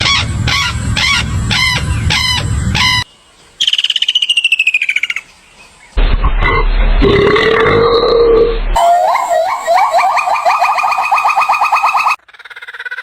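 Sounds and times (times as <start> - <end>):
low rumble: 0.0 - 3.0, 5.9 - 8.8
repeated pitched animal call: 0.0 - 5.0, 7.6 - 13.0
fast pulsed animal trill: 8.8 - 13.0.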